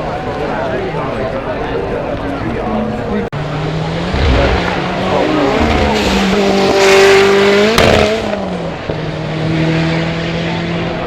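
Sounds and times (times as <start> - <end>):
sports car engine accelerating: 2.7 - 11.0
sharp engine crack: 4.1 - 8.4.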